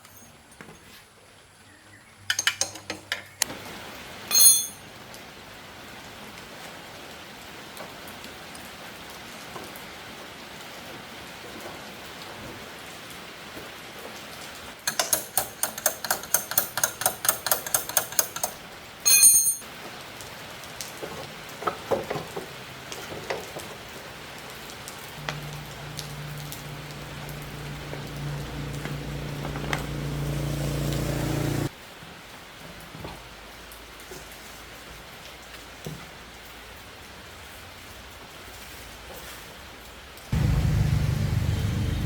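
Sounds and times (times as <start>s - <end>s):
rain-like hiss: 3.5s - 14.8s, 19.7s - 42.0s
fast metallic clicks: 14.9s - 19.6s
small motor humming: 25.2s - 31.7s.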